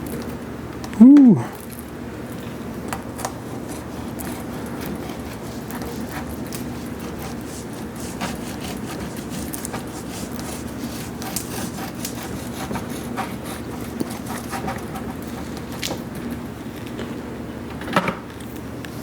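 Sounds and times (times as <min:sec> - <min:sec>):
uncapping tool scraping wax: 0:03.1 - 0:16.0.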